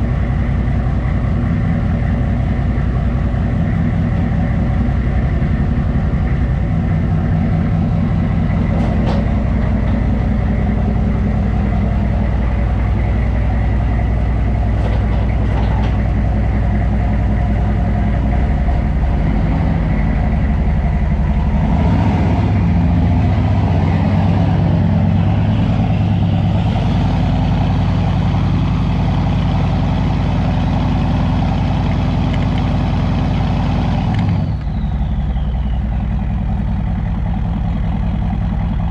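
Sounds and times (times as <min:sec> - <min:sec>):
diesel engine idling: 0:00.0 - 0:38.9.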